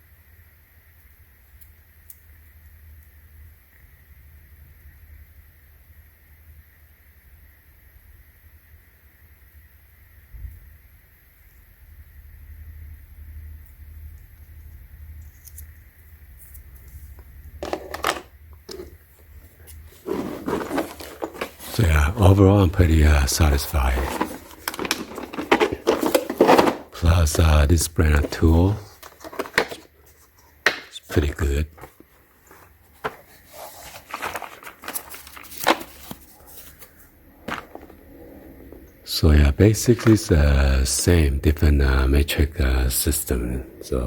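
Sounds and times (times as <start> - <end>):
low steady hum: 10.4 - 44.0
rustling: 16.4 - 27.5, 28.1 - 38.9
metal tools clacking and scraping: 17.6 - 21.8, 24.0 - 26.9.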